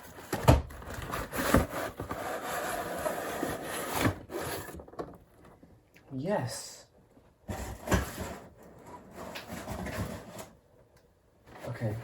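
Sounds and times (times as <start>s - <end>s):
cardboard scraping against cardboard: 0.9s - 4.8s.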